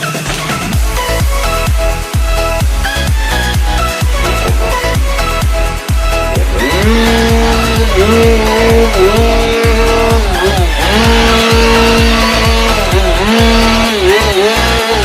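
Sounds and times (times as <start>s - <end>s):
chainsaw cutting: 0.0s - 15.0s
electronic dance music: 0.0s - 15.0s.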